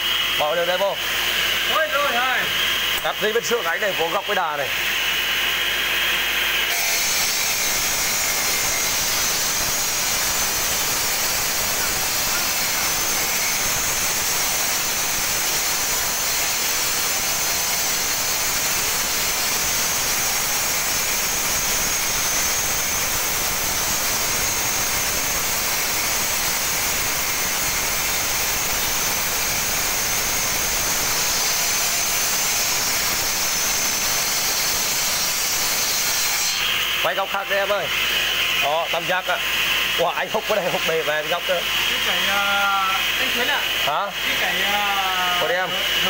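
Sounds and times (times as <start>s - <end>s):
saw blade grinding through stone: 6.6s - 39.2s.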